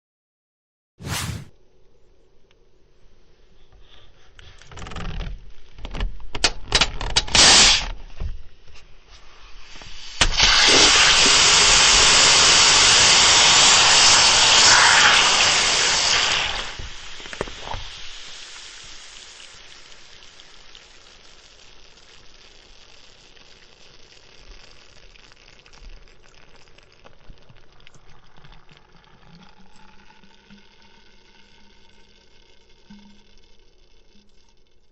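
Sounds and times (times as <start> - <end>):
carbonation gas hissing: 9.1 - 26.9
bubbles fizzing: 13.5 - 34.9.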